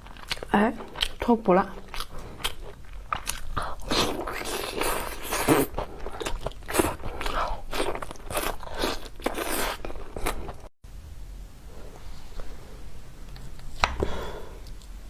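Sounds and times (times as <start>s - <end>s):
person chewing and biting: 0.0s - 1.2s, 1.8s - 10.7s.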